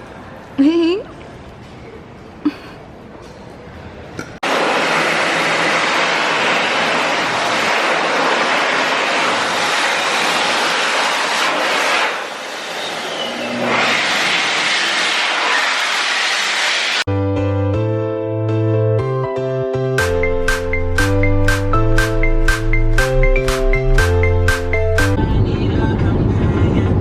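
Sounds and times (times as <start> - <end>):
moving vehicle noise: 24.8 - 27.0
rushing wind: 25.2 - 27.0.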